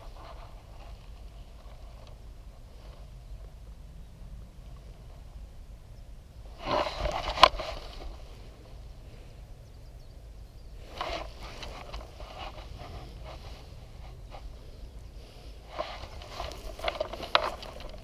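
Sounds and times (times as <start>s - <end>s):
rustling and scraping: 0.0s - 3.2s, 6.5s - 8.8s, 10.8s - 18.0s
steady low rumble: 0.0s - 18.0s.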